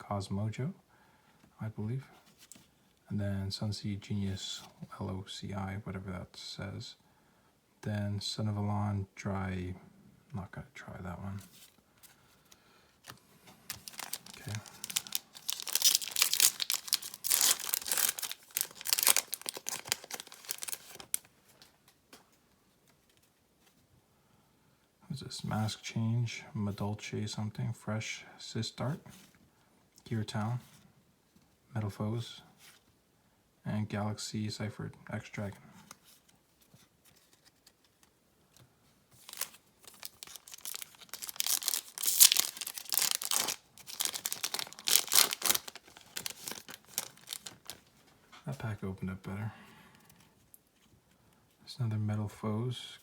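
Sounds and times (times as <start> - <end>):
foil wrapper crinkling and tearing: 13.7 - 21.3, 39.2 - 48.0.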